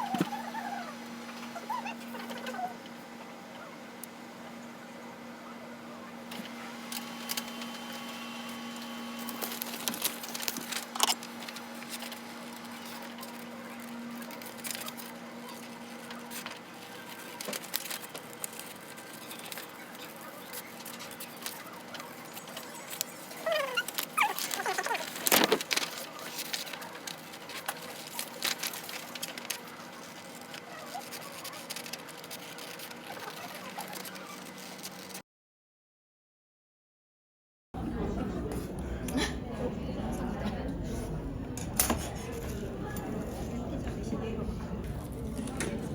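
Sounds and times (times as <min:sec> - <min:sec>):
steady low hum: 0:37.8 - 0:45.9.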